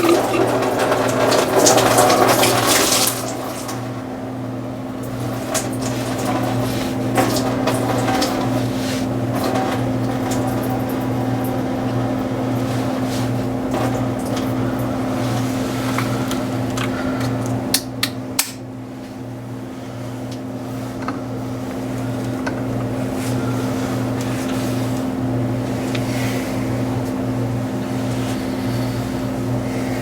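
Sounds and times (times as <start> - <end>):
low mechanical hum: 0.0 - 30.0.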